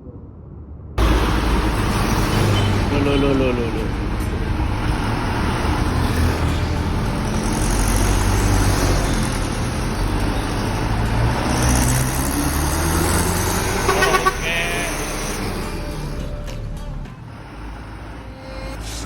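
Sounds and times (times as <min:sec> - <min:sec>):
diesel truck engine droning: 0:01.0 - 0:19.0.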